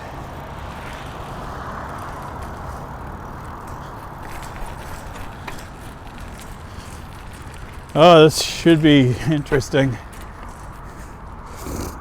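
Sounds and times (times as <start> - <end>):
bicycle tyres and wind rumble: 0.0 - 12.0
passing road traffic: 0.0 - 12.0
light clicks and rattles: 2.0 - 11.1.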